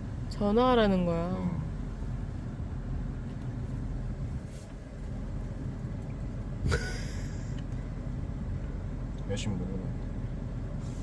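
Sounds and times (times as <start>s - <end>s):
car interior rumble: 0.0s - 11.0s.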